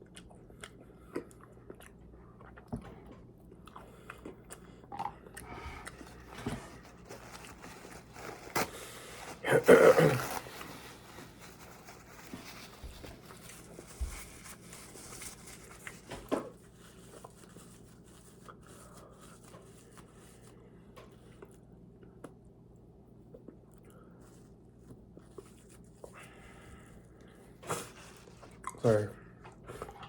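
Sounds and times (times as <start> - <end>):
person chewing food: 0.0 - 9.4, 23.1 - 30.0.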